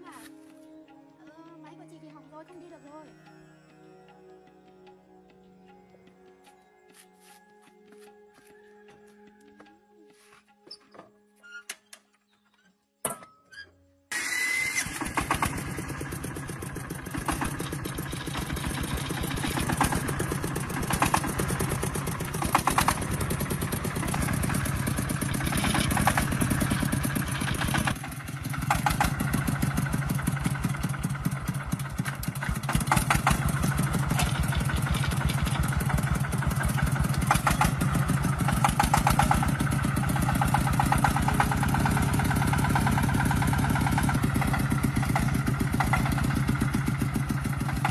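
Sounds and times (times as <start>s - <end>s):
small diesel engine running: 14.1s - 47.9s.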